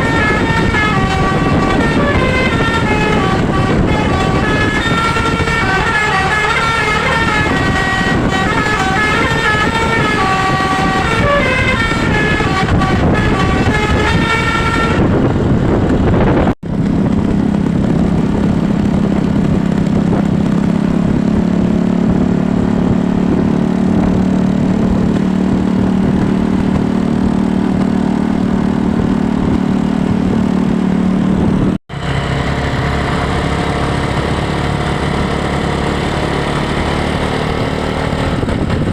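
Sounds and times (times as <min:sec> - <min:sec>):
bus musical horn playing a tune: 0:00.0 - 0:15.8.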